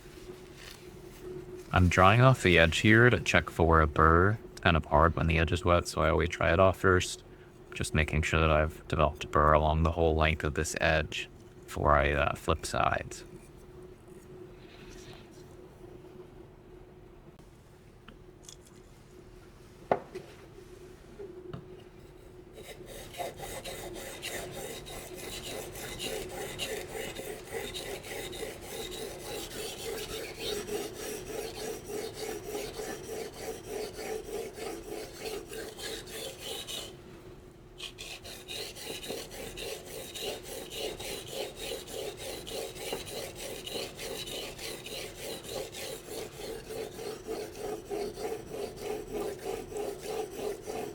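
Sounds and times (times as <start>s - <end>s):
knife scraping on whetstone: 22.0s - 37.0s, 37.8s - 50.9s.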